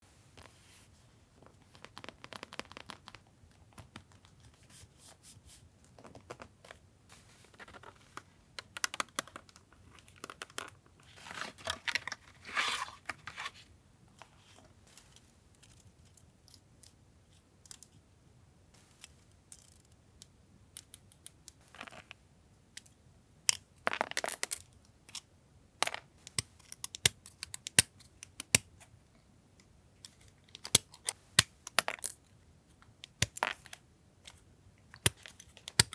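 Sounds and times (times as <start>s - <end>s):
paper rustling and crinkling: 9.8s - 13.7s.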